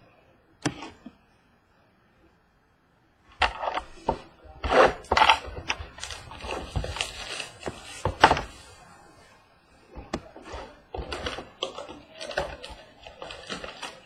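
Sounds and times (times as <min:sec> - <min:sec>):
packaging crinkling and ripping: 0:04.8 - 0:08.0, 0:10.6 - 0:14.0.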